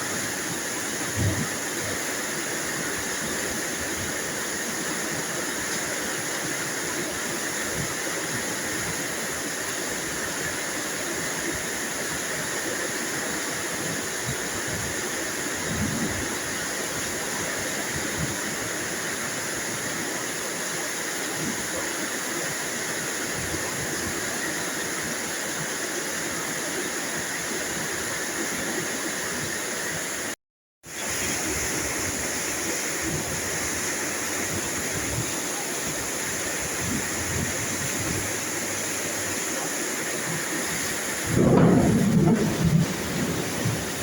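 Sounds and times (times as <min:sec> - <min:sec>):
steady rain: 0:00.0 - 0:44.0.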